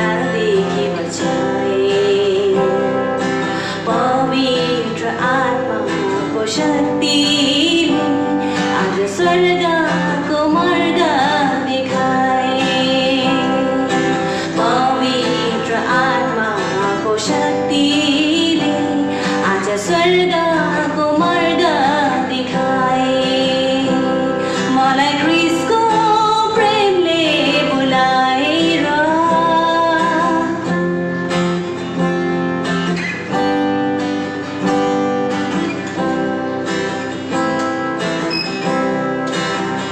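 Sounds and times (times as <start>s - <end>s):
woman singing: 0.0s - 31.8s
acoustic guitar strumming: 0.0s - 39.9s.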